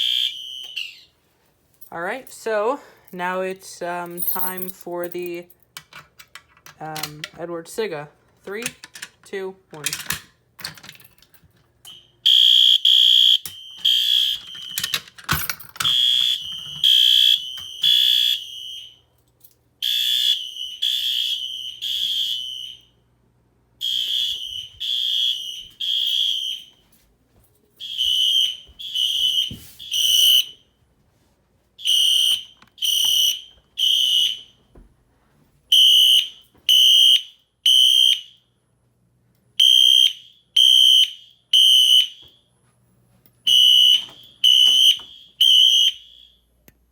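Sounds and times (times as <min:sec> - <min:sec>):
fire alarm horns beeping: 0:00.0 - 0:01.2, 0:11.8 - 0:19.2, 0:19.8 - 0:23.0, 0:23.8 - 0:26.9, 0:27.8 - 0:30.8, 0:31.8 - 0:34.7, 0:35.7 - 0:38.6, 0:39.6 - 0:42.6, 0:43.4 - 0:46.6.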